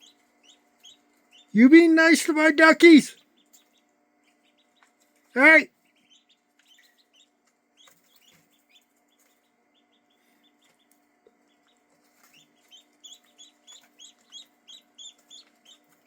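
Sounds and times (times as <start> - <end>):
ducklings peeping: 0.0 - 16.0.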